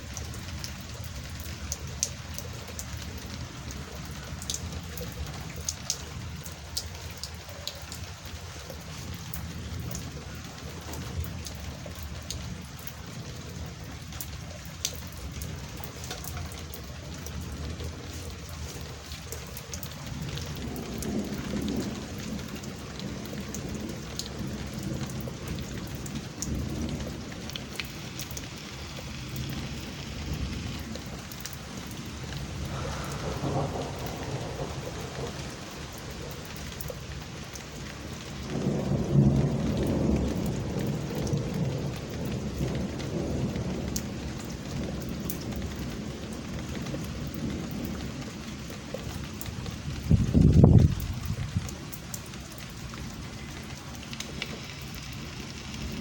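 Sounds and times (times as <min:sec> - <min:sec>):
steady rain falling: 0:00.0 - 0:56.0
thunder rumbling: 0:00.1 - 0:56.0.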